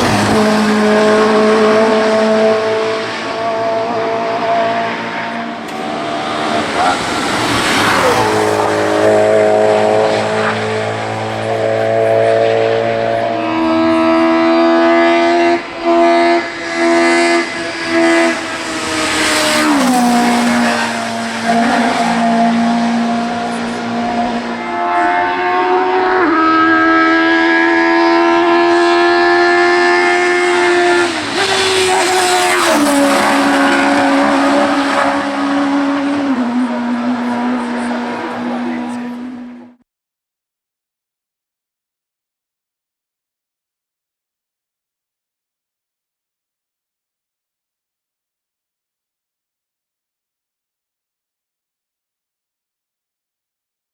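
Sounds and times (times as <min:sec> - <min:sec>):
race car engine at high revs: 0:00.0 - 0:39.8.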